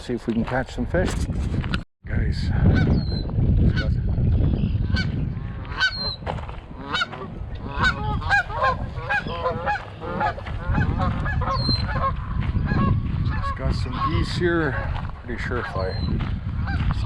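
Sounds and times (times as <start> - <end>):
geese honking: 4.9 - 16.9.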